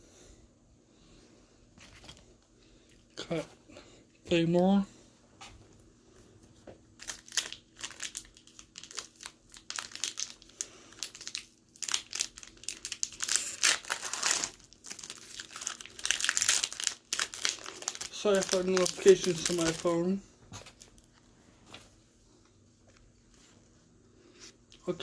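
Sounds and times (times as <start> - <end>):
foil wrapper crinkling and tearing: 7.0 - 21.1.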